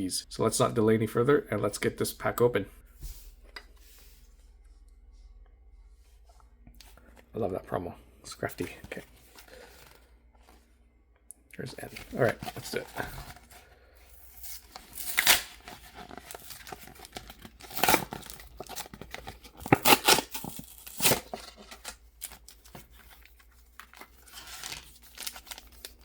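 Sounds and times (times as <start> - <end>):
paper and plastic packaging ripping: 11.9 - 13.6, 14.2 - 26.0.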